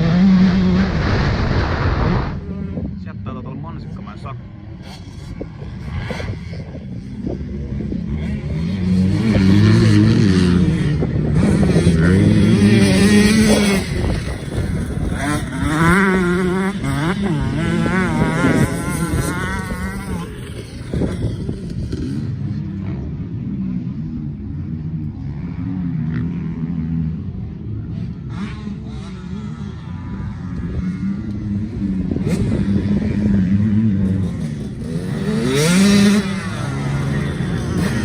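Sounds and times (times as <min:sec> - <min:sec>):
motorbike engine revving: 0:00.0 - 0:02.6, 0:07.2 - 0:23.0, 0:28.2 - 0:38.0.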